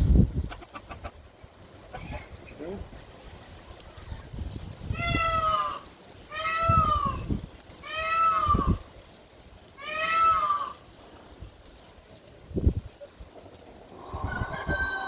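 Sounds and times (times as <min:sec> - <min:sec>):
parrot wavering calls: 0:04.9 - 0:08.8, 0:09.8 - 0:10.8.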